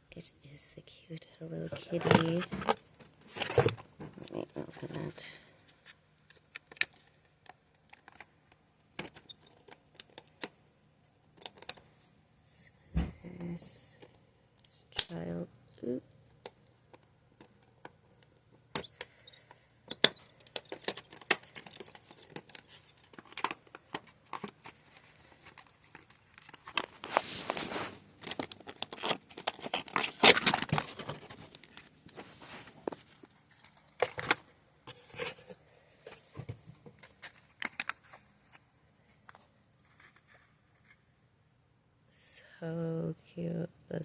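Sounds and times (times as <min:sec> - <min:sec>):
packaging tearing and crinkling: 0:20.6 - 0:34.4.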